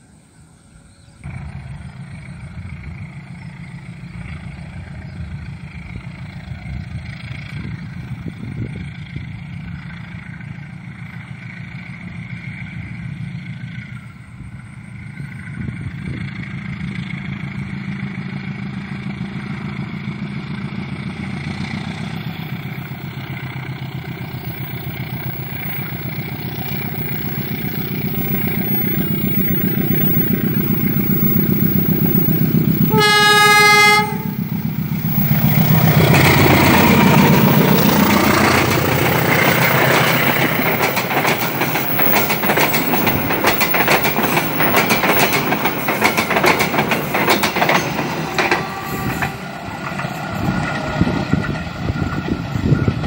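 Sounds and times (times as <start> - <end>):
diesel locomotive engine: 0.0 - 53.0
train cars rumbling: 0.2 - 53.0
wheels clacking over rail joints: 15.2 - 53.0
train horn blast: 32.8 - 34.7, 48.3 - 49.5.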